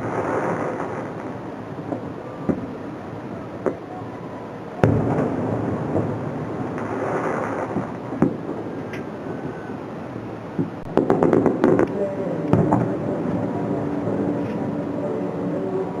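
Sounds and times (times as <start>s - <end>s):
fireworks rumbling: 0.0s - 16.0s
sharp firework bangs: 4.8s - 9.1s, 10.8s - 13.2s.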